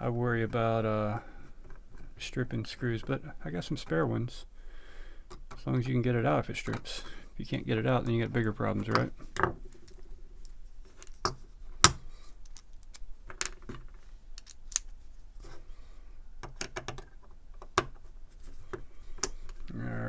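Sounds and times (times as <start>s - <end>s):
small metal clicks and taps: 14.4s - 14.9s.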